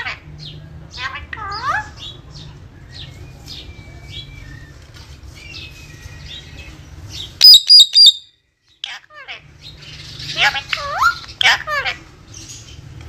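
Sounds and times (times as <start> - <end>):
parrot screeching: 7.4 - 8.2
parrot chirping: 7.4 - 8.3
parrot whistling: 7.4 - 8.3.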